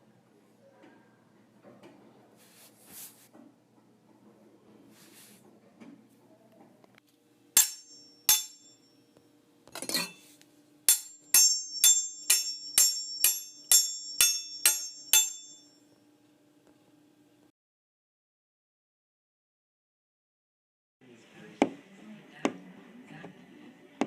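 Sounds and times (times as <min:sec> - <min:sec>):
ringing metallic clinks: 0:07.6 - 0:09.0, 0:10.9 - 0:15.8.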